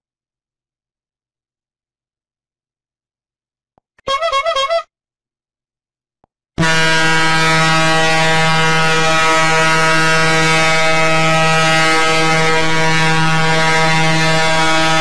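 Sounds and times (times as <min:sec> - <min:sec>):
low horn blast: 0:06.6 - 0:15.0.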